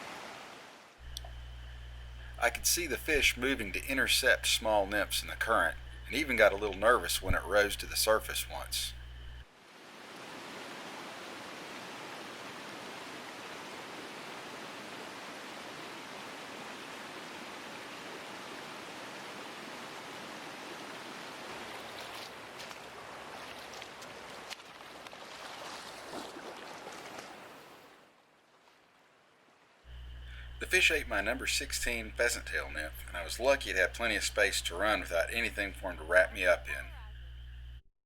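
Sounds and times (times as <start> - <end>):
stream rushing: 0.0 - 1.0, 9.5 - 29.8.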